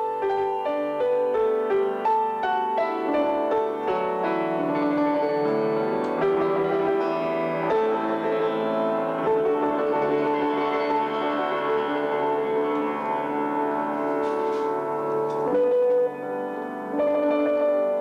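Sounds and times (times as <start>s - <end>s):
piano playing: 0.0s - 18.0s.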